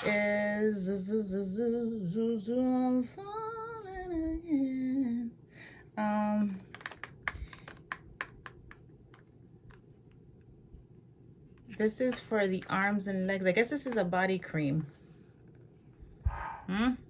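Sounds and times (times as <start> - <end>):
woman singing or humming: 0.0 - 5.4.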